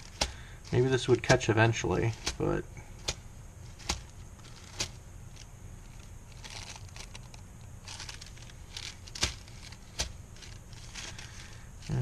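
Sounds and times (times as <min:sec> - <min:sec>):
tissue paper crinkling: 0:03.0 - 0:12.0.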